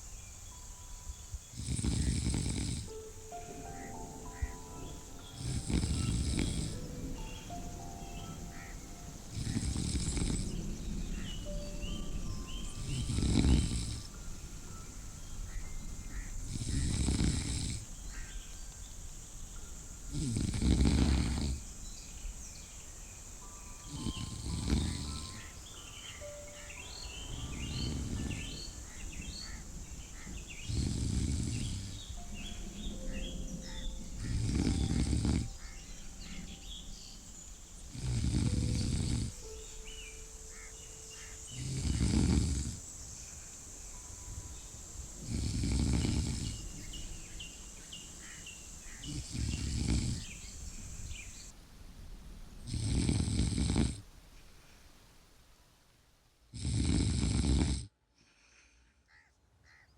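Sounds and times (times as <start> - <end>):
birds chirping faintly: 0.0 - 57.8
person snoring: 1.6 - 3.0, 5.3 - 7.0, 9.3 - 10.6, 12.8 - 14.2, 16.4 - 17.9, 20.1 - 21.7, 23.9 - 25.5, 30.7 - 32.0, 34.3 - 35.5, 37.9 - 39.5, 41.5 - 42.8, 45.2 - 46.6, 49.1 - 50.3, 52.7 - 54.0, 56.6 - 57.9.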